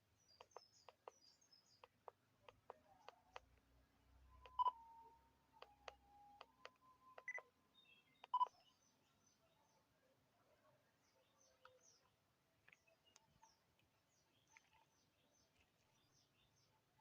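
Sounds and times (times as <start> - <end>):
faint sharp clicks: 0.3 - 3.7, 5.6 - 7.4.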